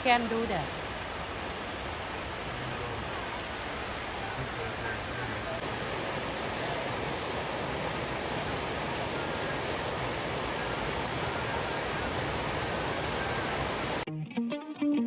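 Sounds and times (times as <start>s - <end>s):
waterfall roaring: 0.0s - 14.0s
electric guitar music: 14.1s - 15.0s.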